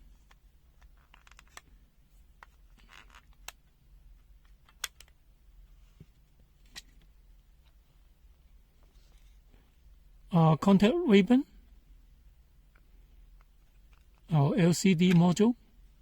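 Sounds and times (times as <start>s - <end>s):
low steady hum: 0.0s - 16.0s
faint clicks of small parts: 0.1s - 1.8s, 2.4s - 5.2s.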